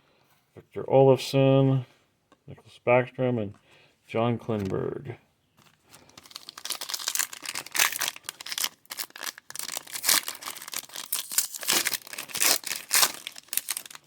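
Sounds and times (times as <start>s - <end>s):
foil wrapper crinkling and tearing: 5.8s - 14.0s.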